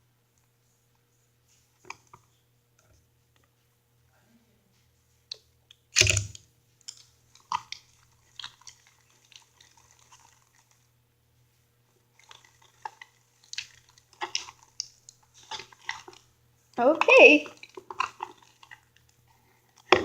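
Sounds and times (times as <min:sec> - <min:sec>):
slime squelching in a bowl: 0:05.3 - 0:10.9, 0:12.0 - 0:20.0.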